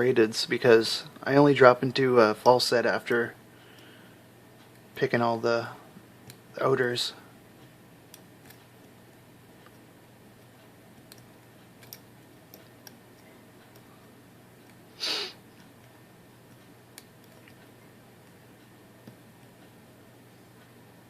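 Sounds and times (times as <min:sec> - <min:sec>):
short hiss: 0:15.0 - 0:15.4.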